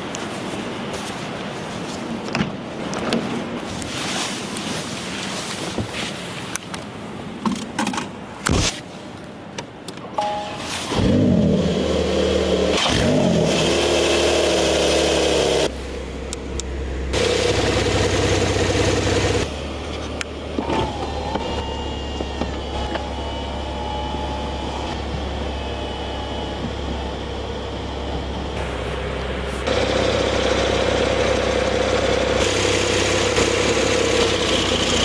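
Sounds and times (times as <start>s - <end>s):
car engine starting and idling: 10.2s - 35.0s
engine revving: 10.9s - 35.0s.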